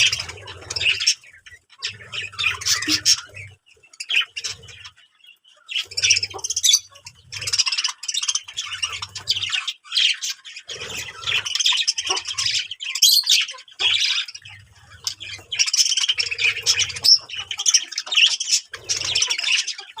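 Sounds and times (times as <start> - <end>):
birds chirping and squawking: 0.0 - 20.0.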